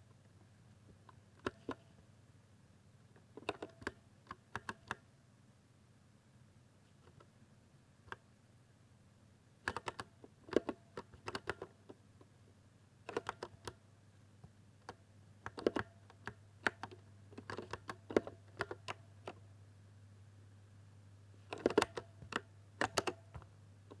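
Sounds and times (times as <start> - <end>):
keyboard typing clicks: 21.5 - 24.0.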